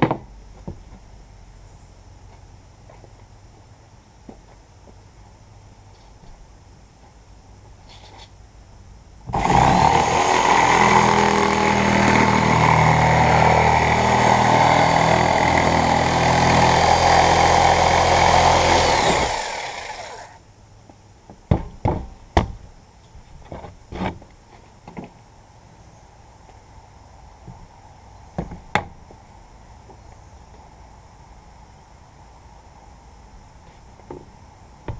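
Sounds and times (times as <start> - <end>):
power saw cutting board: 9.3 - 20.4.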